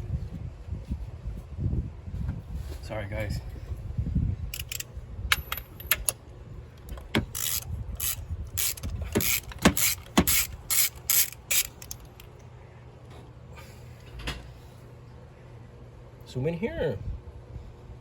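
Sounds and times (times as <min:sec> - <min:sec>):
ratchet wrench clicking: 0:04.6 - 0:06.2, 0:06.9 - 0:12.3.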